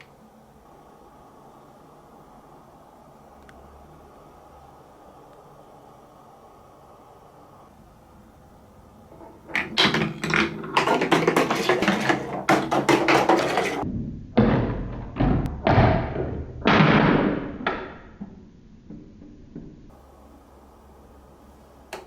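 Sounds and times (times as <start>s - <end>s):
marble rolling rushes: 9.1s - 20.0s
marbles rattling down plastic track: 9.2s - 13.8s.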